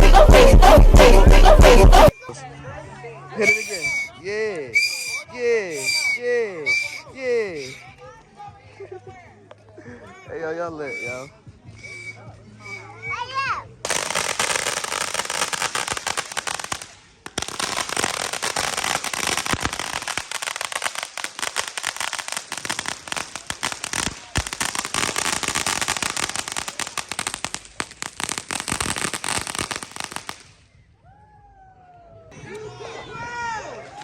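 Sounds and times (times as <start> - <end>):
firecrackers popping: 3.4 - 4.1, 4.8 - 7.0, 7.6 - 7.8, 10.9 - 12.8, 13.8 - 30.7.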